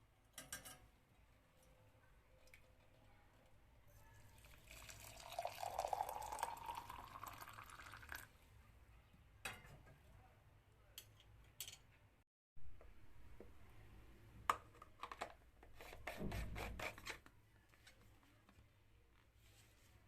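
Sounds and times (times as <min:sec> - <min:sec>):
liquid pouring into a cup: 0:04.3 - 0:08.3.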